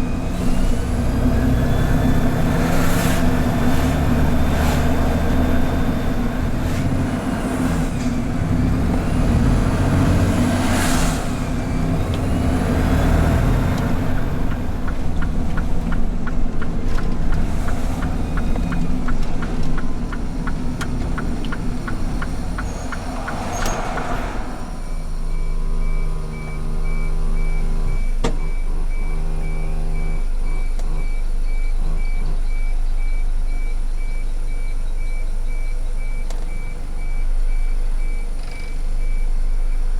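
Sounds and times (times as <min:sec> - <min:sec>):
truck diesel engine running: 0:00.0 - 0:39.9
regular ticks: 0:13.7 - 0:24.2
air-brake hiss: 0:22.6 - 0:25.2
rapidly repeating high beep: 0:25.1 - 0:39.9.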